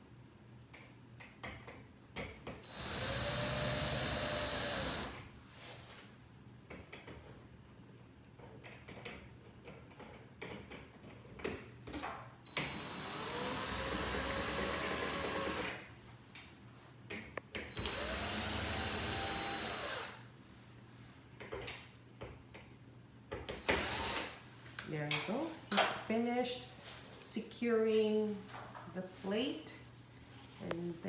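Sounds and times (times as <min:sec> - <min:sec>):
power drill driving screws: 0:02.7 - 0:05.2, 0:12.5 - 0:15.8, 0:17.7 - 0:20.2, 0:23.6 - 0:24.4.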